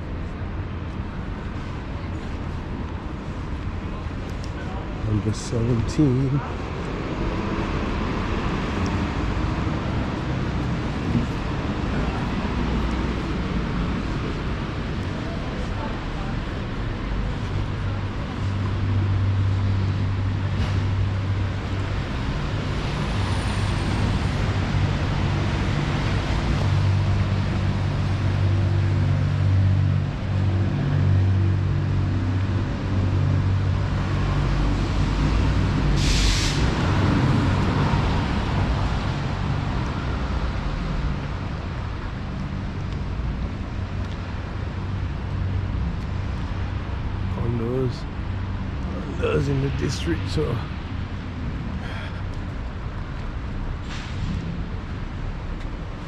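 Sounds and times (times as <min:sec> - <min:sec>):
air brake hiss: 0:36.0 - 0:36.7, 0:53.8 - 0:54.4.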